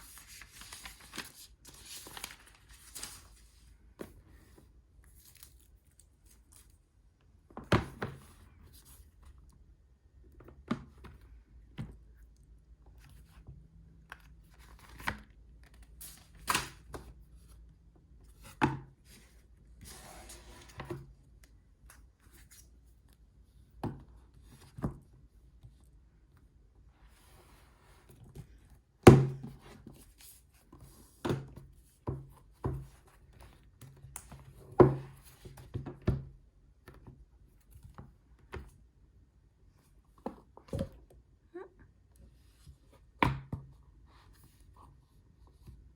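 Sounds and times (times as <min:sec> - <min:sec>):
packaging rustling: 0:00.0 - 0:03.4.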